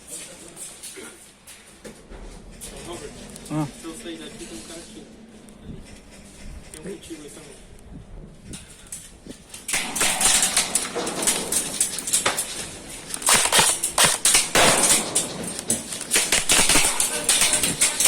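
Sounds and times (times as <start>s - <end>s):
airsoft gunfire cracks: 9.7s - 18.0s.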